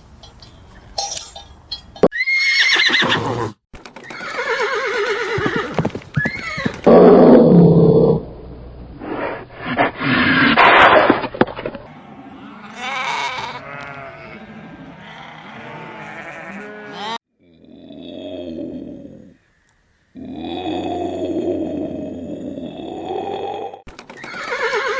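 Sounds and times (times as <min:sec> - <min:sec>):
farm animals: 0:11.8 - 0:19.8, 0:24.1 - 0:24.9
bleating: 0:11.9 - 0:17.2, 0:24.2 - 0:24.9.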